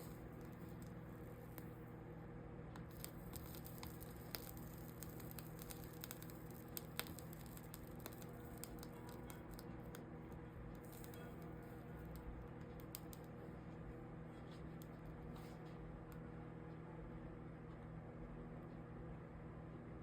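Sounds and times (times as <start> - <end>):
solder crackling and clicking: 0.0 - 1.8, 2.7 - 13.5
steady low hum: 0.0 - 20.0.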